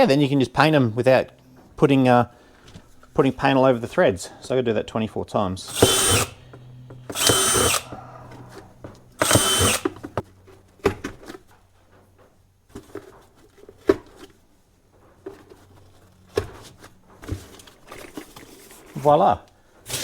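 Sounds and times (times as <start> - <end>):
power drill whirring: 5.6 - 10.2.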